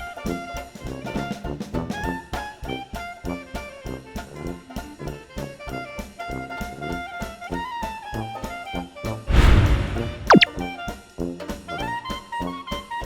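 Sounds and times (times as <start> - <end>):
upbeat jazzy music: 0.0 - 8.9.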